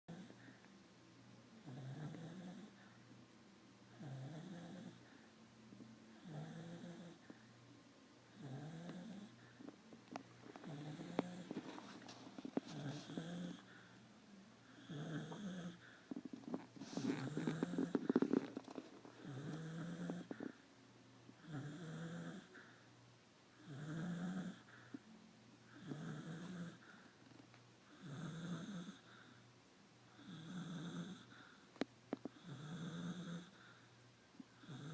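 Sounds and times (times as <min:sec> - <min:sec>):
dog snoring: 0:00.1 - 0:00.6, 0:01.6 - 0:03.0, 0:03.9 - 0:05.2, 0:06.1 - 0:07.4, 0:08.3 - 0:09.7, 0:10.4 - 0:13.9, 0:14.6 - 0:20.6, 0:21.4 - 0:22.8, 0:23.6 - 0:25.0, 0:25.7 - 0:27.0, 0:27.9 - 0:29.3, 0:30.1 - 0:31.6, 0:32.2 - 0:33.7, 0:34.5 - 0:34.9.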